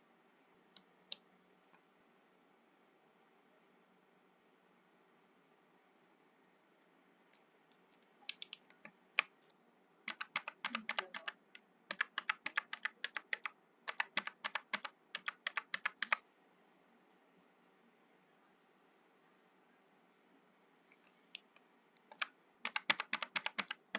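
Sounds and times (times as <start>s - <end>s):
mechanical keyboard typing: 10.1s - 16.2s, 22.1s - 23.9s.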